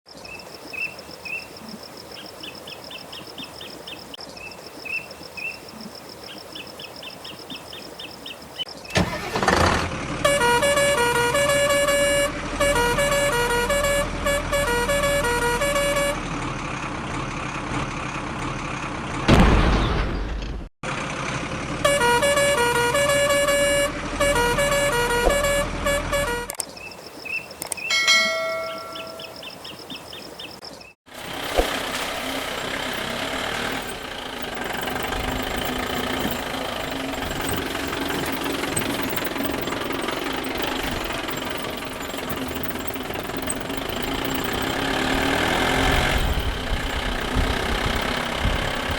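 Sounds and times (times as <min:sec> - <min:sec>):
toy vehicle electronic horn tones: 0:10.2 - 0:16.2, 0:21.8 - 0:26.6, 0:27.9 - 0:29.5, 0:32.4 - 0:47.4.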